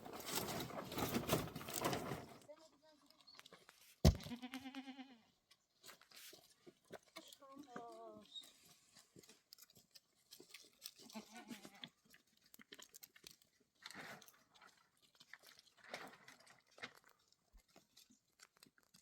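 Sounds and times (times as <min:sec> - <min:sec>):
rustling and crunching: 0:00.0 - 0:19.0
goat or sheep bleating: 0:04.1 - 0:05.4, 0:11.0 - 0:12.0.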